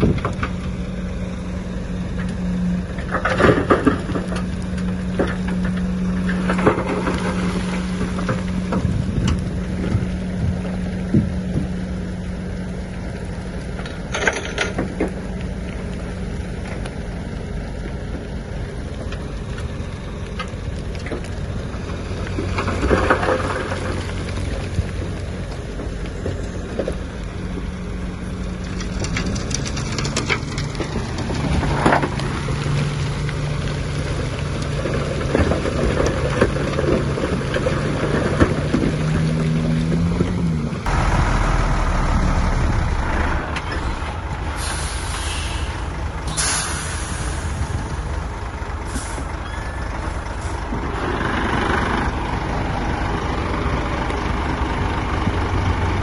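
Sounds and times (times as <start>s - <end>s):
heavy diesel machinery running: 0.0s - 56.0s
truck air brake hisses: 44.5s - 47.7s, 48.9s - 49.4s.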